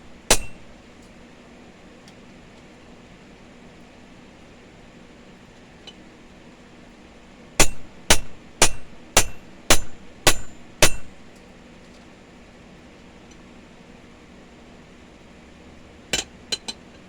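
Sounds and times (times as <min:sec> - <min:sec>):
hand hammer striking steel: 0:00.1 - 0:00.7, 0:07.6 - 0:11.2.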